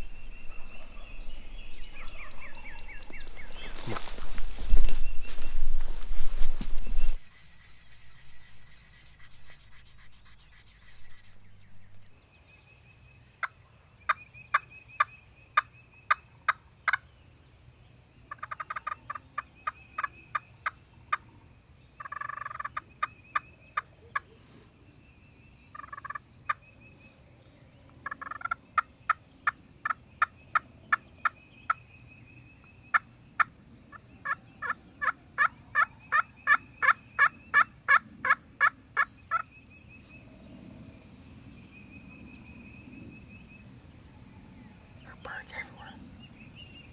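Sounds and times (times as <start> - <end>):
turkeys calling sharp notes: 0.0 - 12.0.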